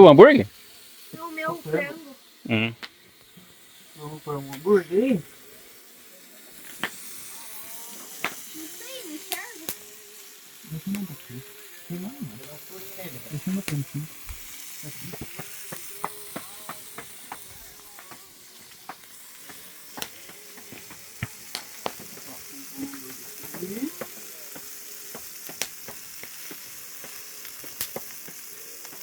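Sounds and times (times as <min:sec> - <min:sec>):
patties sizzling in pan: 0:00.3 - 0:29.0
utensil tapping pan: 0:14.3 - 0:27.2.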